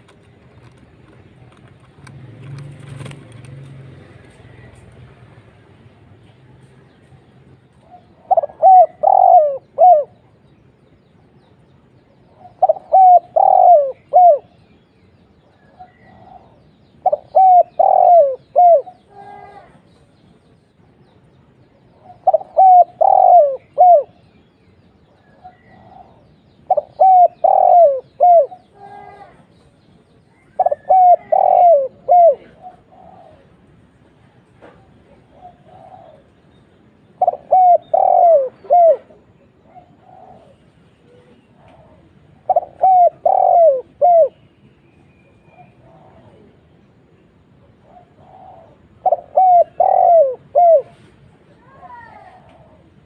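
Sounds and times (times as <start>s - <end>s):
dove cooing: 7.8s - 10.3s, 12.3s - 14.6s, 15.4s - 19.8s, 21.9s - 24.3s, 25.1s - 29.4s, 30.4s - 34.0s, 34.6s - 36.4s, 37.1s - 44.4s, 45.4s - 51.2s.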